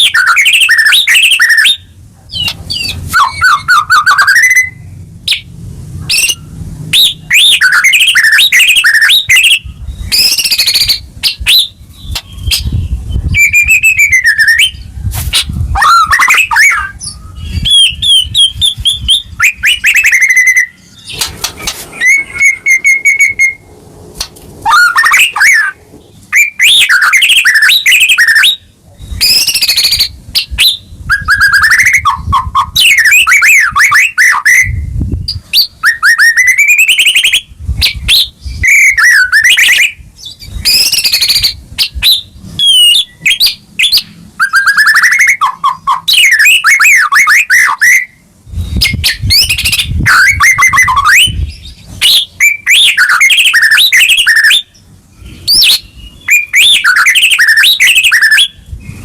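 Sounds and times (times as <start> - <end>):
songbird singing: 0.0 - 59.0
low rumble: 20.8 - 24.8.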